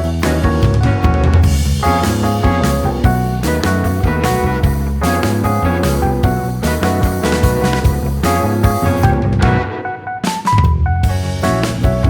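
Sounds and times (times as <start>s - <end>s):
guitar and drums music: 0.0s - 12.0s.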